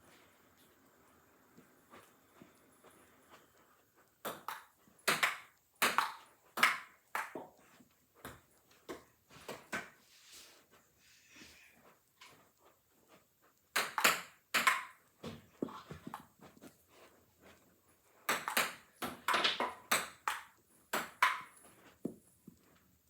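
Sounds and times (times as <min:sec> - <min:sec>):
table tennis paddles hitting ball: 0:04.2 - 0:07.6, 0:13.7 - 0:16.3, 0:18.3 - 0:22.2.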